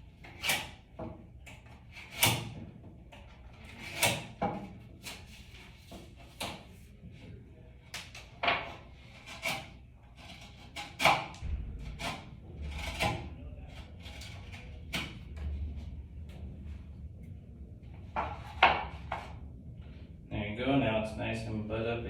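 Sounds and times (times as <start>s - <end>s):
low rumble: 11.4s - 22.0s.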